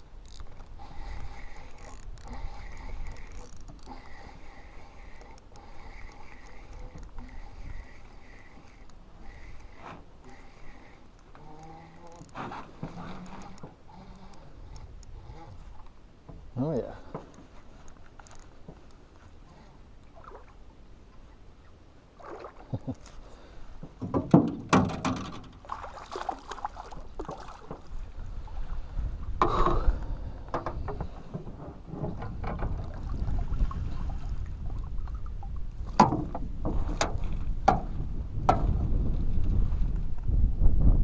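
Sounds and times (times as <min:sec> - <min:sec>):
knocks and clatters in canoe: 0:00.2 - 0:13.9, 0:22.2 - 0:28.1, 0:29.2 - 0:41.0
wind rumble on microphone: 0:26.9 - 0:41.0.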